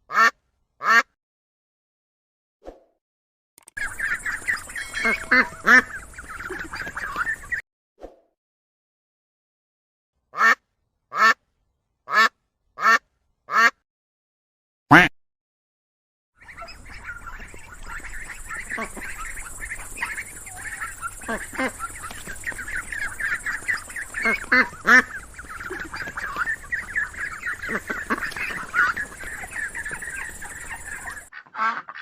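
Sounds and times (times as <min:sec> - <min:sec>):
ducks quacking: 0:03.8 - 0:07.6, 0:14.9 - 0:15.1, 0:16.4 - 0:32.0.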